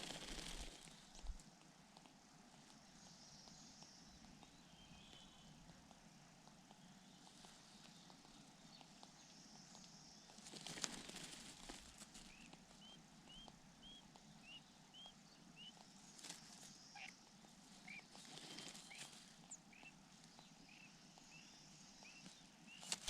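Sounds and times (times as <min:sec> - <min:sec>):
bird chirping faintly: 0:00.0 - 0:23.0
soft rustles: 0:10.3 - 0:12.8, 0:17.4 - 0:19.6, 0:22.2 - 0:23.0.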